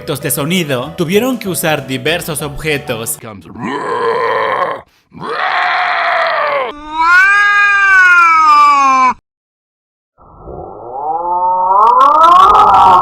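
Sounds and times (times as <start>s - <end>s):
wailing cries: 3.6s - 9.2s.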